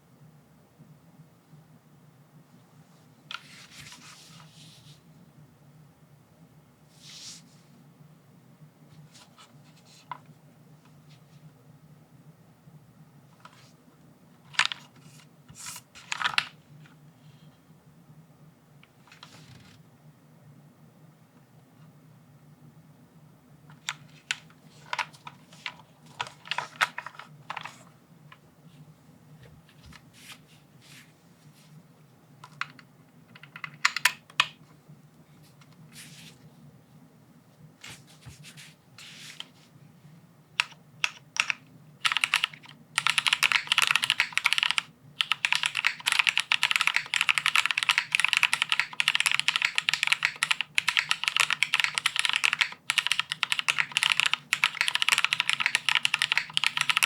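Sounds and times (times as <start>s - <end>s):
mechanical keyboard typing: 32.4s - 34.6s, 40.6s - 57.0s.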